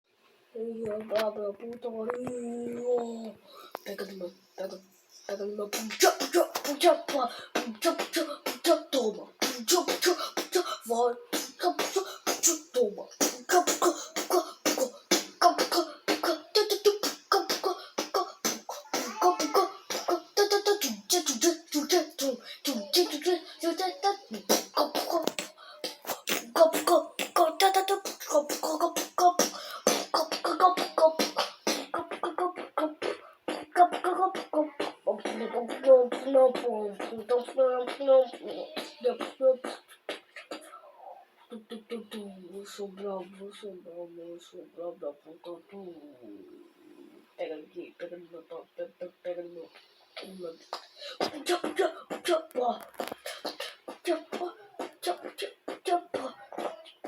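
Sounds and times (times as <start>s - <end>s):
chopped vocal fragments: 0.8s - 40.8s, 50.2s - 57.0s
person beatboxing: 5.7s - 40.7s, 50.2s - 57.0s.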